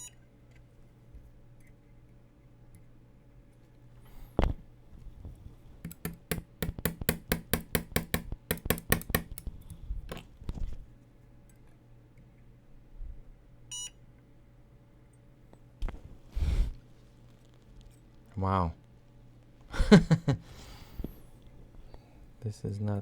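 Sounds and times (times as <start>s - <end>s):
spot welder snapping: 5.8s - 9.6s.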